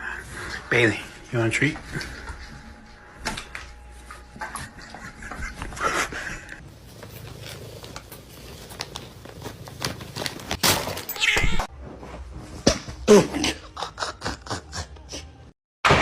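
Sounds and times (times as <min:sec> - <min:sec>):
cat meowing: 0:11.2 - 0:11.7.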